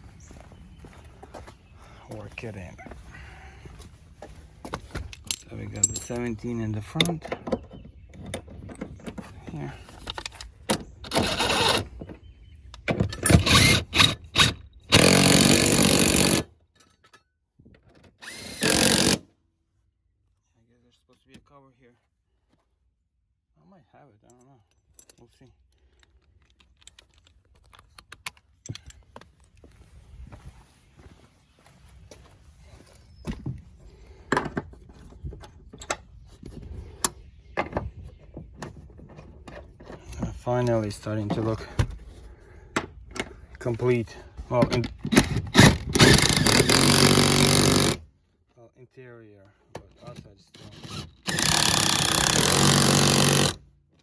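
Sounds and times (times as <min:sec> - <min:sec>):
power tool driving bolts: 0:10.1 - 0:11.9, 0:12.8 - 0:16.5, 0:18.0 - 0:19.3, 0:44.6 - 0:48.1, 0:50.0 - 0:53.7.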